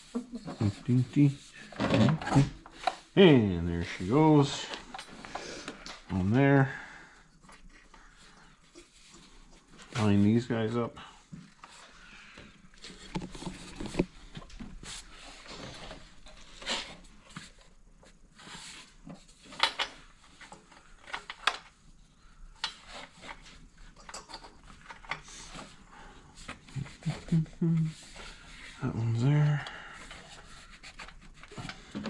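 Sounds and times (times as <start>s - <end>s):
light clicks and knocks of parts: 19.0s - 21.9s, 22.5s - 25.8s.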